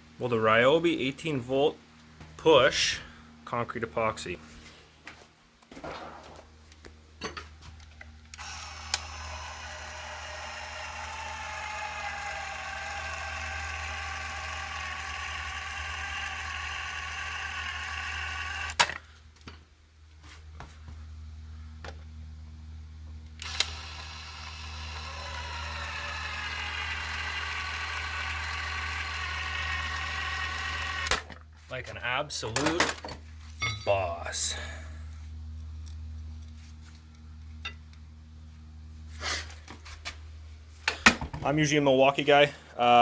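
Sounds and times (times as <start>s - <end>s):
caulking gun motor whining: 8.2s - 19.1s, 23.3s - 31.4s.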